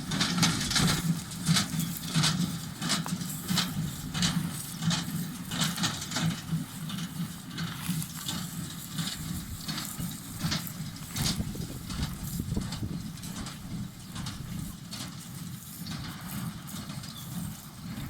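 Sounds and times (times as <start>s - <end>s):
hay baler mechanical clacks: 0.0s - 18.0s
tractor engine running: 0.0s - 18.0s.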